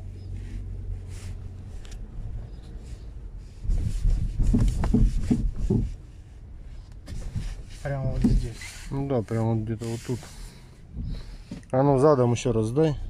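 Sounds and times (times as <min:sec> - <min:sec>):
car cabin rumble: 0:00.0 - 0:10.2, 0:10.8 - 0:13.0
low dull suspension knocks: 0:03.7 - 0:06.0.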